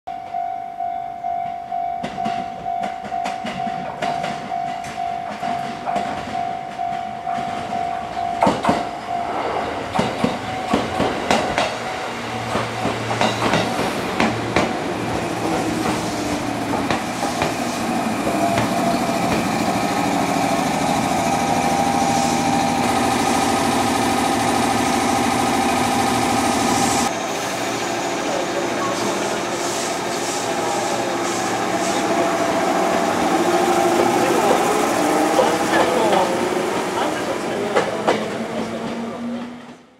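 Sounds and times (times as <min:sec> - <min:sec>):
repeating warning tone: 0:00.1 - 0:09.7
train wheels clicking over rail joints: 0:02.0 - 0:09.0, 0:09.9 - 0:27.1
train motors humming: 0:02.1 - 0:39.9.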